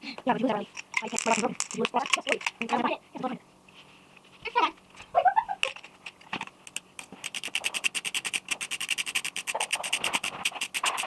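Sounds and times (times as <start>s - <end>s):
ratchet clicking: 6.6s - 11.0s.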